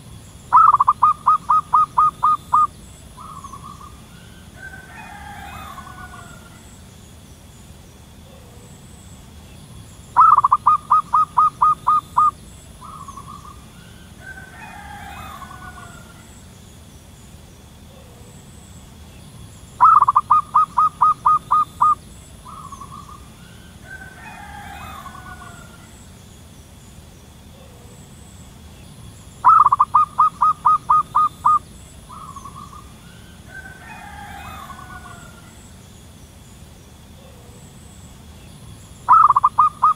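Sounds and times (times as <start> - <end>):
dove cooing: 0.0 - 6.8, 10.2 - 16.5, 19.8 - 26.1, 29.4 - 35.6, 39.1 - 39.9.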